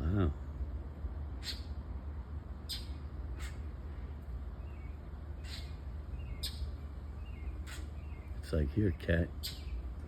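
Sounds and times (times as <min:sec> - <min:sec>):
bird sharp scolding calls: 0:01.4 - 0:01.8, 0:02.6 - 0:03.7, 0:04.7 - 0:08.4, 0:09.4 - 0:09.9.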